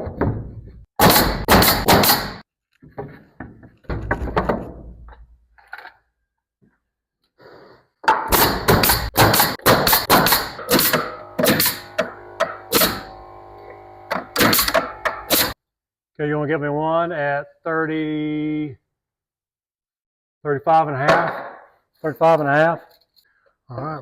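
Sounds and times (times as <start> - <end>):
knocks and thuds on wood boards: 0.0 - 5.2, 8.0 - 13.2.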